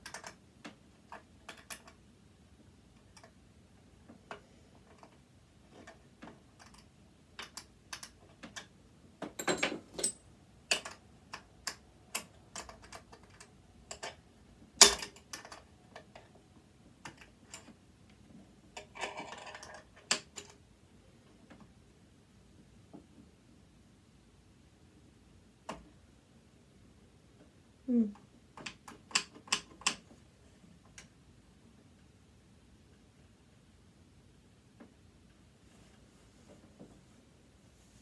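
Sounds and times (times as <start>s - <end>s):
clicks of hand tools and metal: 14.8s - 16.3s.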